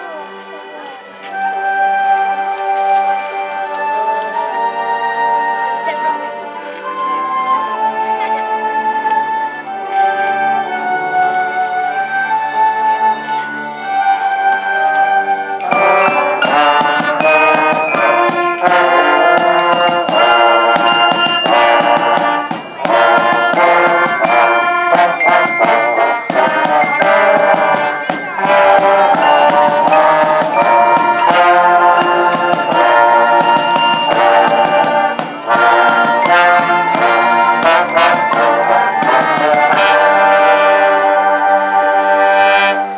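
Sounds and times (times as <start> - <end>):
orchestra playing: 0.0 - 42.9.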